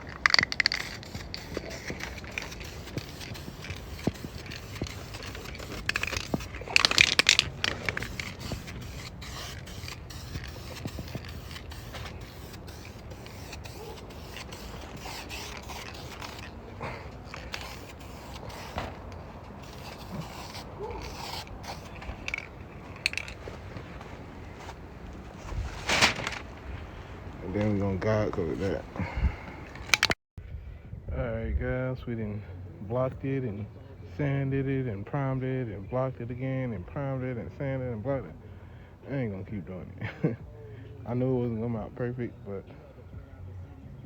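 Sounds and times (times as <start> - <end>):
aerosol can clicks and rattles: 0.0 - 24.0, 29.6 - 30.2
spray paint hiss: 0.0 - 24.5.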